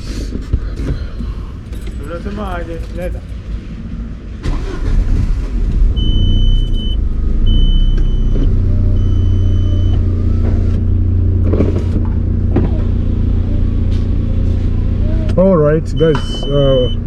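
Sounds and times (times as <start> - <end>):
car engine idling: 0.0 - 17.0
electronic warning chime beeps: 6.0 - 10.0, 15.9 - 17.0.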